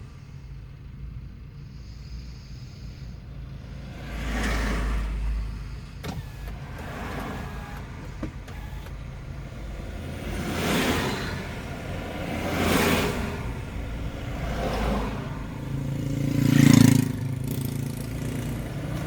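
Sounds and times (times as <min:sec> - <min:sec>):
sharp clicks: 0:06.0 - 0:09.3.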